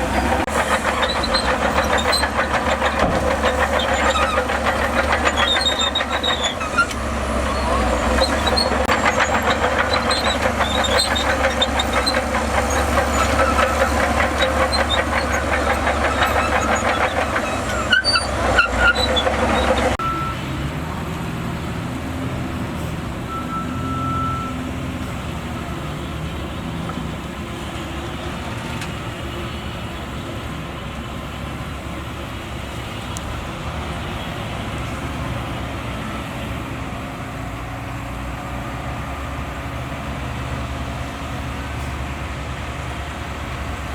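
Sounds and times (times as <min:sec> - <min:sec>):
diesel machinery clattering: 0:00.0 - 0:43.9.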